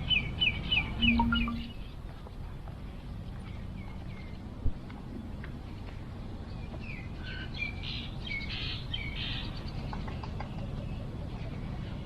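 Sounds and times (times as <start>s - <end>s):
birds chirping: 0.0s - 2.1s.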